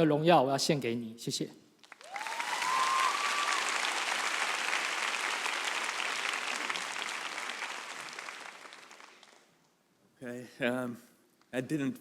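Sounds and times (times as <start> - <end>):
audience applauding: 1.8 - 9.6.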